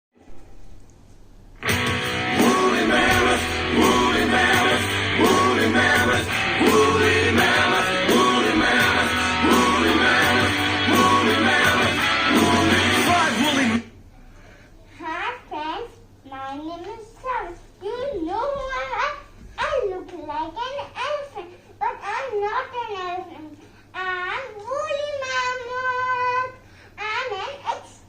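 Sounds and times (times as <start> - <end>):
rock song with singing: 1.6 - 13.9.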